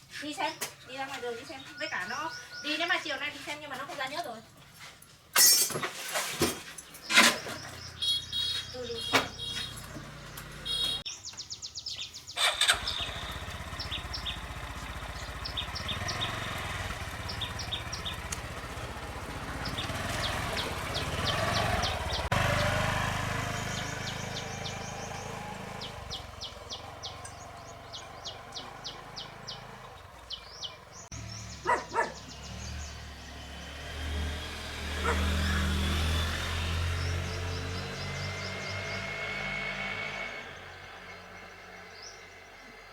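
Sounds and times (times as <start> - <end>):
motorbike engine running: 7.8 - 11.0, 12.4 - 42.4.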